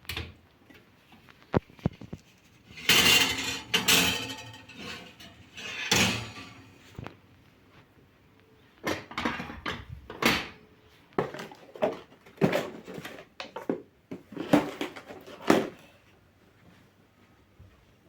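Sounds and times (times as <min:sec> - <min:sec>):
household knocks and rustles: 0:01.8 - 0:07.1, 0:11.2 - 0:15.8.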